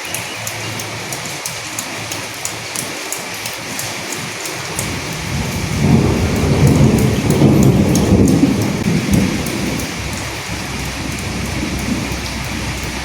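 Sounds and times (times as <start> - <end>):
steady rain: 0.0 - 13.0
thunder rumbling: 4.5 - 13.0.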